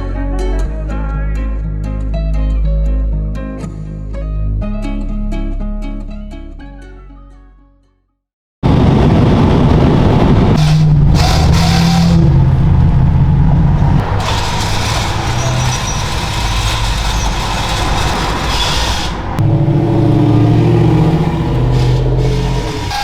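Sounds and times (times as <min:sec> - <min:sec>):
guitar music: 0:00.1 - 0:07.7
road and wind noise: 0:08.6 - 0:23.0
vehicle engine running: 0:08.6 - 0:23.0.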